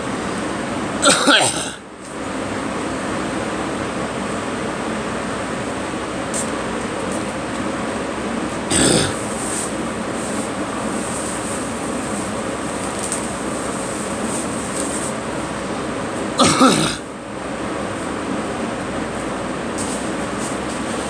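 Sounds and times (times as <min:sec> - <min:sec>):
person coughing: 0:01.0 - 0:01.8, 0:08.7 - 0:09.2, 0:16.4 - 0:17.1.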